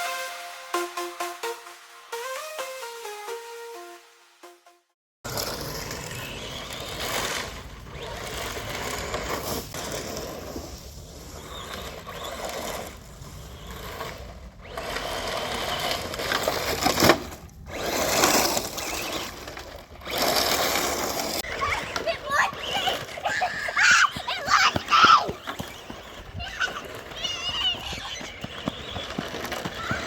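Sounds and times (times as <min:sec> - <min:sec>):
tyres scrabbling: 0:05.3 - 0:30.0
electric motor whining: 0:05.4 - 0:10.6, 0:11.2 - 0:16.8, 0:17.7 - 0:30.0.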